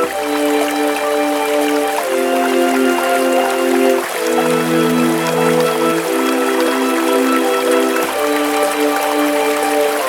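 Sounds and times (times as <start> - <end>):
ambient synth pad chords: 0.0 - 10.0.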